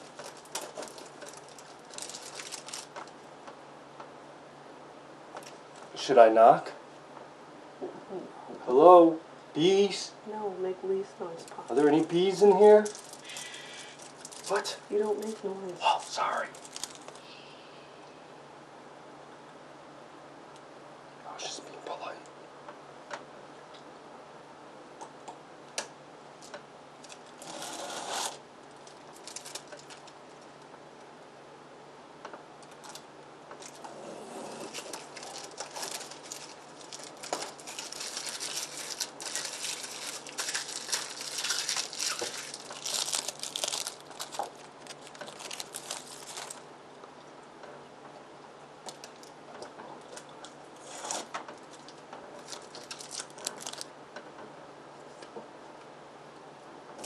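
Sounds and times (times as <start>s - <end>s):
cover rustling and crinkling: 0.0s - 3.2s, 27.1s - 30.5s, 34.7s - 46.6s, 51.1s - 53.9s.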